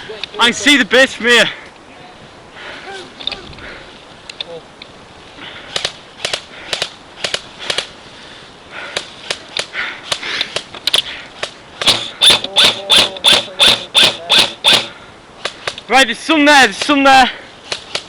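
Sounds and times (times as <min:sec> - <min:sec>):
airsoft gun shots: 0:11.8 - 0:15.0.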